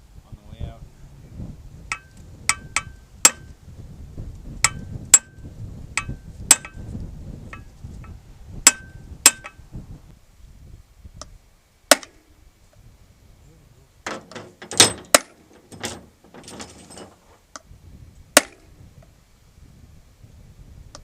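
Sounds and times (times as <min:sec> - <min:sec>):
hammer striking metal: 0:01.9 - 0:03.5, 0:06.0 - 0:06.8, 0:08.7 - 0:09.6.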